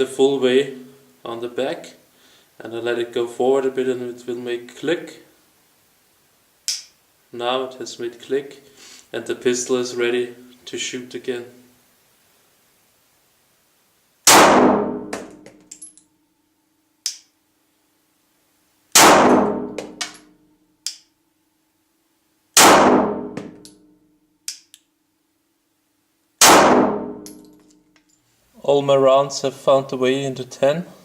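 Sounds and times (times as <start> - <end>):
pistol shots in a small room: 14.2 - 15.5, 17.0 - 17.4, 18.9 - 21.2, 22.6 - 24.7, 26.4 - 27.8
light metallic clicks and tinks: 15.4 - 16.2, 27.2 - 28.3.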